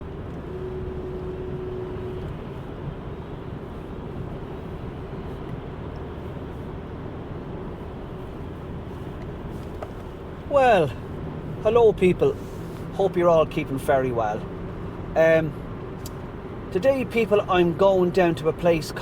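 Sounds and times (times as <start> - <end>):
car road and engine noise: 0.0 - 19.0.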